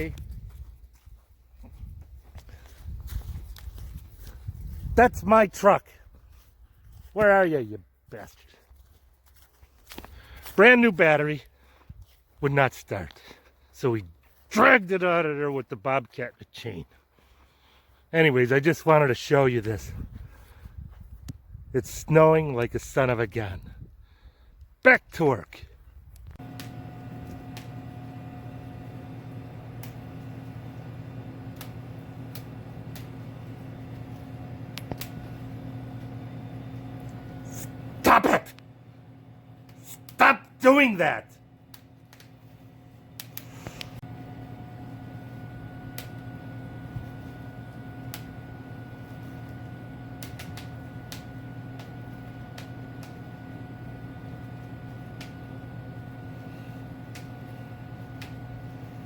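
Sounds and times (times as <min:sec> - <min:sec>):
steady machine hum: 0:26.2 - 0:59.0
sharp clicks: 0:31.5 - 0:33.1, 0:34.7 - 0:35.2, 0:41.7 - 0:42.4, 0:43.2 - 0:44.0, 0:48.0 - 0:48.3, 0:50.2 - 0:51.9.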